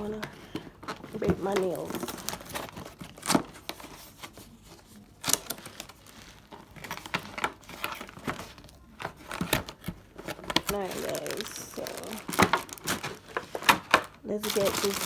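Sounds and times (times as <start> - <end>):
cardboard crinkling and scraping: 0.0 - 15.0.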